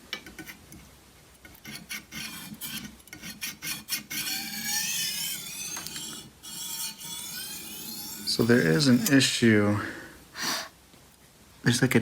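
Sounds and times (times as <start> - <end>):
knife rasping on sharpening stone: 1.6 - 9.4
high squeal of blade scraping: 1.7 - 9.4.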